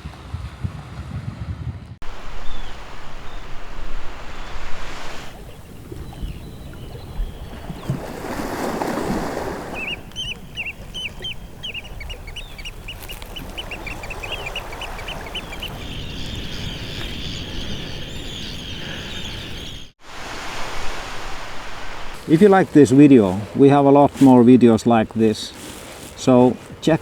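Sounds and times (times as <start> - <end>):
wind: 0.0 - 27.0
surf: 2.0 - 18.1, 18.8 - 27.0
shorebirds calling: 2.0 - 24.8.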